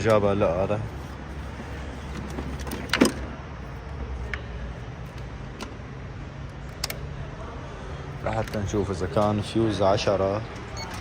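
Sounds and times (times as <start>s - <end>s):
parts clicking and knocking: 2.0s - 3.4s.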